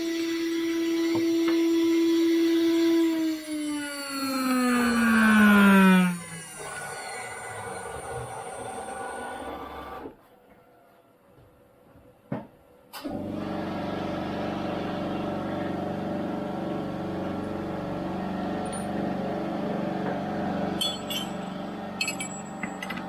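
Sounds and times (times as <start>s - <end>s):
cnc machine humming: 0.0s - 9.5s
sharp metallic clinks: 20.8s - 23.0s.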